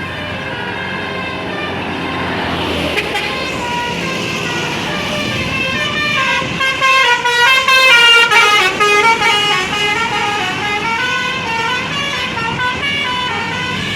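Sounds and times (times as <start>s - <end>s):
bus musical horn playing tune: 0.0s - 13.9s.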